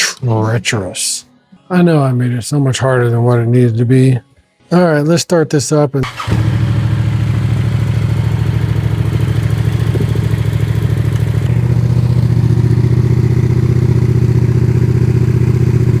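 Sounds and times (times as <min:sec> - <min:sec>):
motorcycle engine idling: 0:06.0 - 0:16.0.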